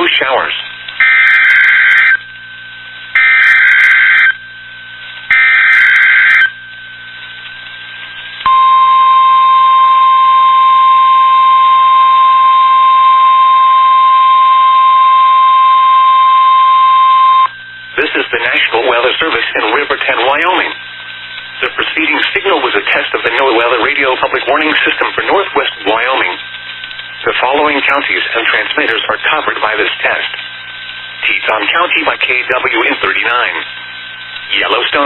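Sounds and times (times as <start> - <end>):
screeching digital data bursts: 1.0 - 2.2, 3.2 - 4.4, 5.3 - 6.6
steady warning alarm tone: 1.0 - 2.2, 3.2 - 4.6, 5.3 - 6.8, 8.4 - 17.9.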